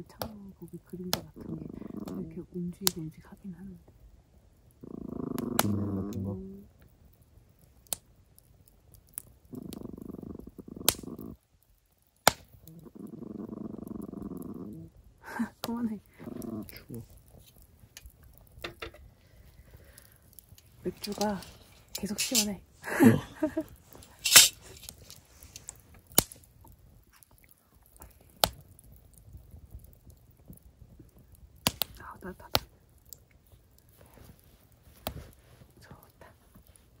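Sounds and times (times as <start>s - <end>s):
campfire crackling and popping: 0.0s - 37.0s
dog growling low: 0.8s - 2.6s, 4.7s - 6.8s, 9.4s - 11.4s, 12.5s - 17.4s, 22.8s - 24.7s
sharp clicks: 10.8s - 11.4s.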